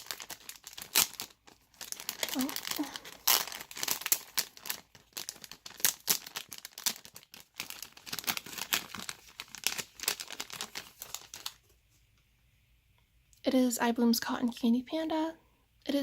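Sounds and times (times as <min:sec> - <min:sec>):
plastic packaging crinkling: 0:00.0 - 0:11.8.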